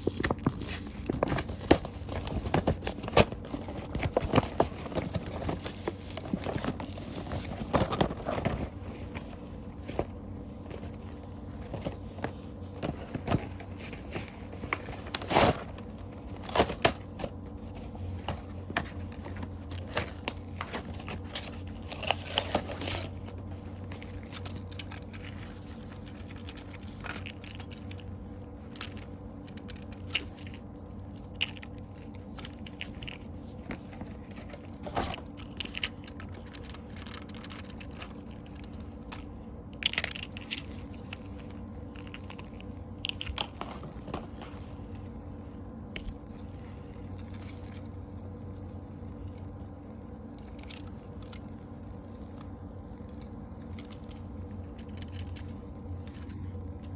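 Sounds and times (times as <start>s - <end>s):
packaging crinkling and tearing: 0.0s - 45.2s
steady low hum: 0.0s - 56.9s.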